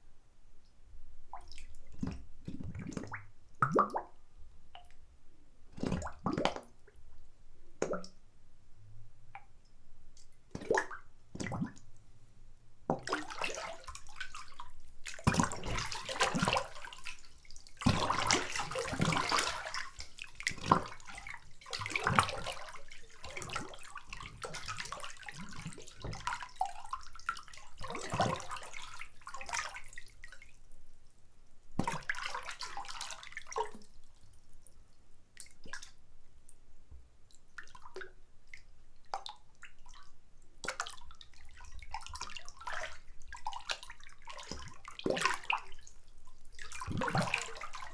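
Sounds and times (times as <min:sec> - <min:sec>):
bathwater splashing and sloshing: 0:10.5 - 0:11.9, 0:12.9 - 0:30.5, 0:40.6 - 0:47.9.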